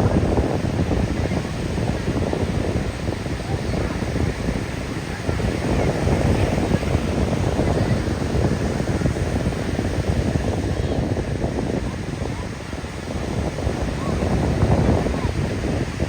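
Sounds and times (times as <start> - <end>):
ocean surf: 0.0 - 16.0
wind buffeting microphone: 0.0 - 16.0.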